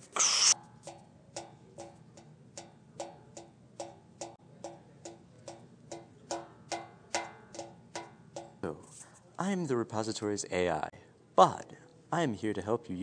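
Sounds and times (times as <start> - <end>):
steady ringing ticks: 0.8 - 8.6.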